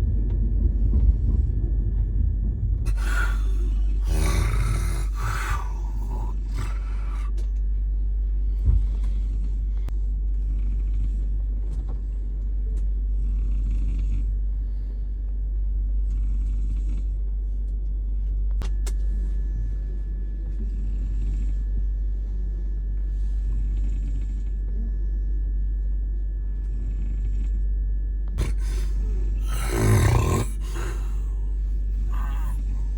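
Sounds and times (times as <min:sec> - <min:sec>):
train rumble: 0:00.0 - 0:07.4.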